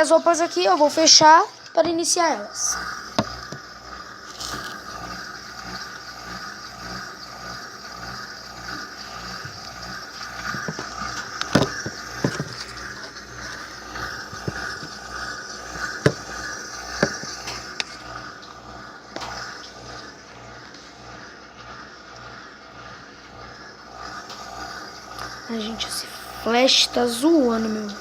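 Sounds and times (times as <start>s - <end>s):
water flowing: 0.0s - 20.1s
washing machine running: 0.0s - 28.0s.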